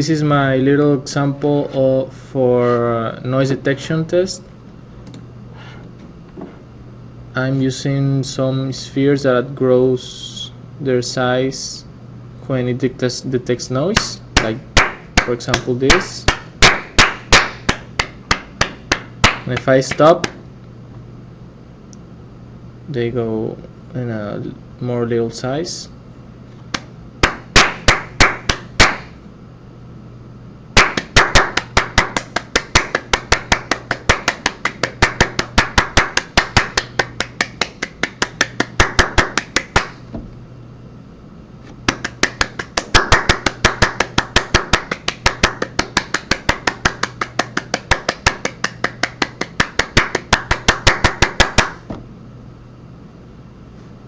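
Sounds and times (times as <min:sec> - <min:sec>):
fast sharp knocks: 0:14.4 - 0:20.4, 0:27.2 - 0:29.2, 0:30.8 - 0:40.3, 0:41.8 - 0:52.0.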